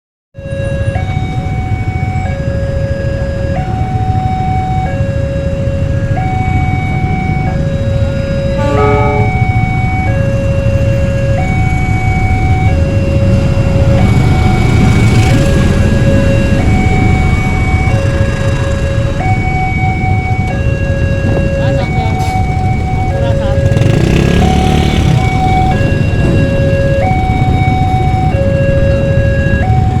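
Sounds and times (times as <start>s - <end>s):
traffic rumble: 0.4s - 30.0s
two-tone electronic alarm: 0.4s - 30.0s
chord of electronic tones: 6.8s - 10.1s.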